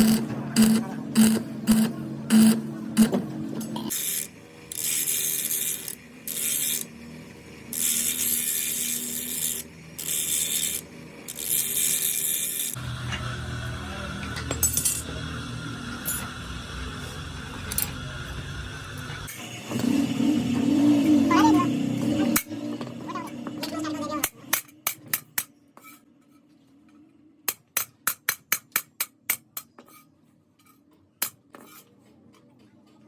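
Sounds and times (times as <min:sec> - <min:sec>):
low machine hum: 0:12.6 - 0:24.4.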